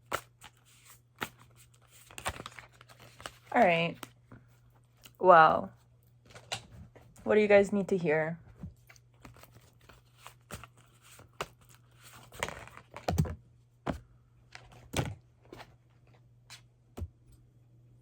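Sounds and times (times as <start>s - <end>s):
cards being shuffled: 0.0s - 4.2s, 8.8s - 15.7s
faint low hum: 0.0s - 18.0s.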